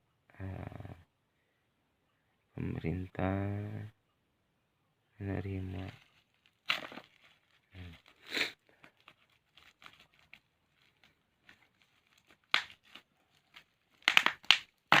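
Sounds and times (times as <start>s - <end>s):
packaging crinkling and tearing: 5.8s - 15.0s.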